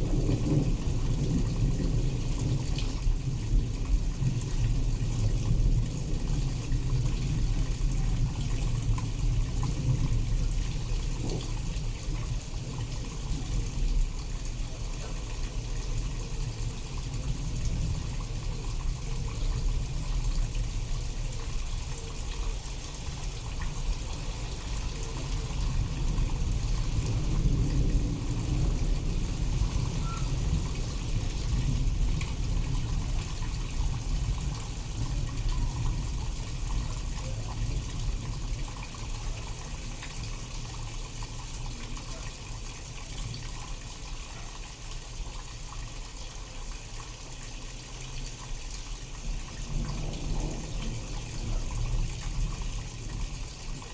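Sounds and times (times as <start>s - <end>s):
low rumble of thunder: 0.0s - 53.9s
steady rain falling: 0.0s - 53.9s.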